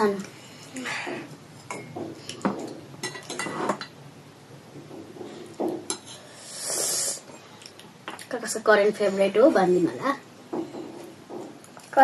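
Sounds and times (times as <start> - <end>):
cutlery clinking on plates: 1.6 - 3.9
hissing sound: 6.4 - 7.3.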